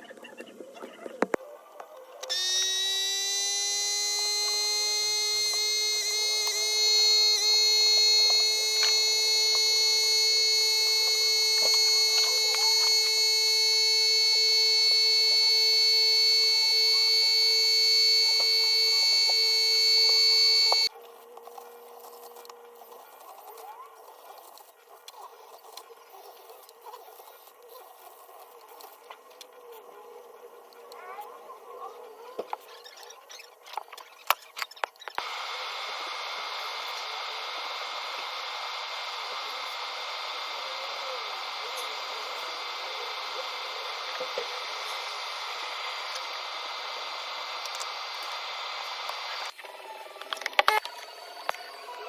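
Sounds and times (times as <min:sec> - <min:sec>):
high buzzing tone: 0:02.3 - 0:20.9, 0:35.2 - 0:49.5.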